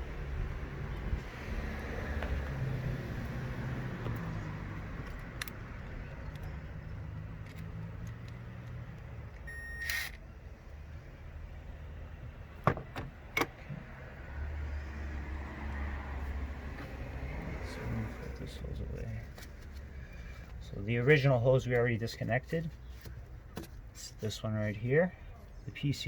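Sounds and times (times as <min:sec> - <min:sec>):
short beep: 0:09.5 - 0:10.0.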